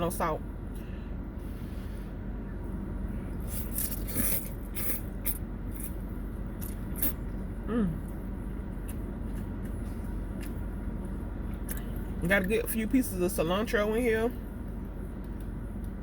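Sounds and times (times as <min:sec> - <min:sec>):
steady low hum: 0:00.0 - 0:16.0
mouth smacking and slurping: 0:03.4 - 0:06.0
person humming mm: 0:07.6 - 0:08.1.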